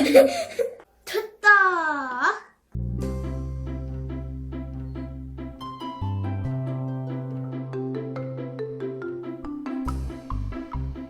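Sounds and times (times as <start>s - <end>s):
pulsing bass: 2.8s - 6.9s
light plucky tune: 2.8s - 11.0s.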